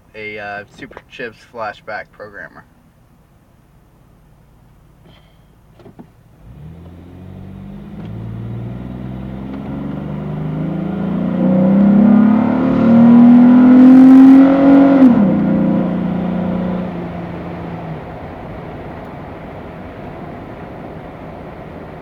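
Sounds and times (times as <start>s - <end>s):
car engine accelerating: 5.0s - 22.0s.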